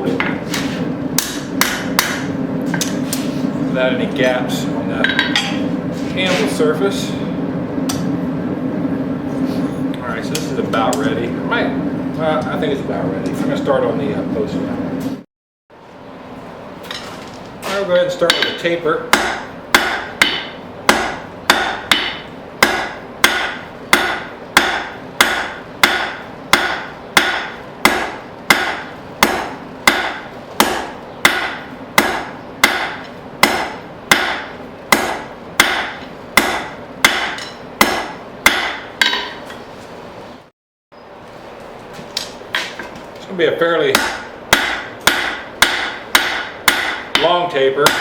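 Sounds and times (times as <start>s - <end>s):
hammer striking steel on anvil: 1.2s - 3.3s, 5.0s - 5.7s, 17.7s - 39.5s, 43.9s - 48.0s.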